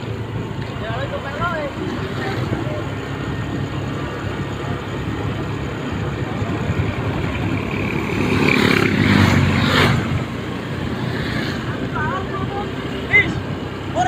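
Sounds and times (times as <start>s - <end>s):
strong wind buffeting microphone: 1.9s - 12.7s.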